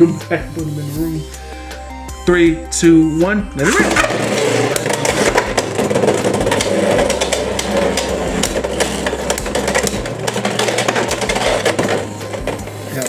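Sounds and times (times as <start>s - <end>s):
spinning tops whirring: 3.6s - 13.0s.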